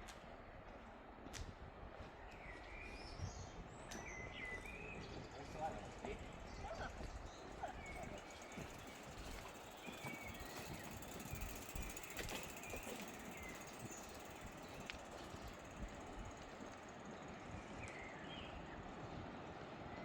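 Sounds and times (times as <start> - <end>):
quiet street ambience: 0.0 - 20.0
bird chirps: 6.5 - 15.6
soft footsteps: 8.0 - 16.8.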